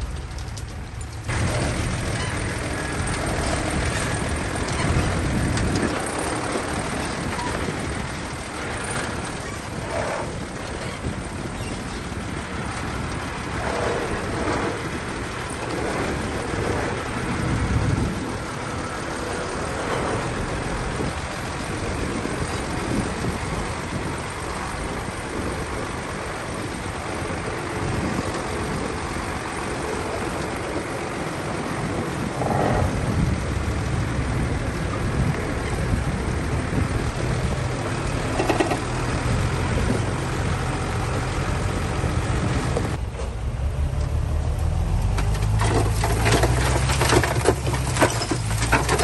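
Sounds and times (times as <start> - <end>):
bulldozer diesel engine under load: 0.0 - 49.0.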